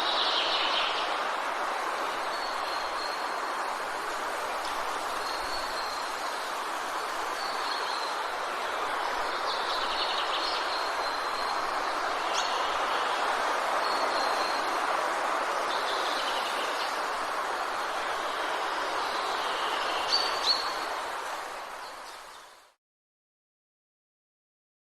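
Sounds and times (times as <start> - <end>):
wind: 0.0 - 22.8
songbirds calling: 9.0 - 13.3.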